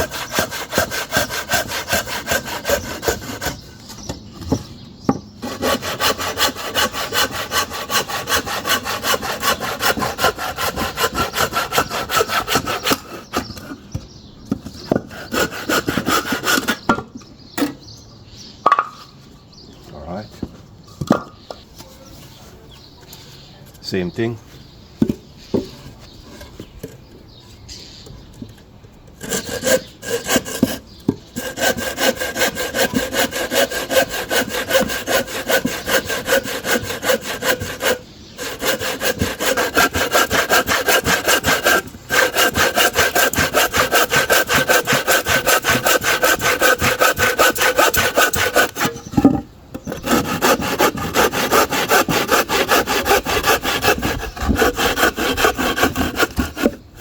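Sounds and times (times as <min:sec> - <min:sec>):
hand saw cutting wood: 0:00.0 - 0:04.6, 0:05.4 - 0:13.8, 0:14.6 - 0:17.0, 0:29.2 - 0:57.0.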